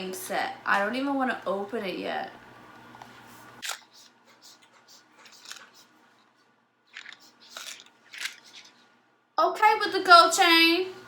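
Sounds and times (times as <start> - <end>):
jewelry packaging rustling: 6.9 - 8.8.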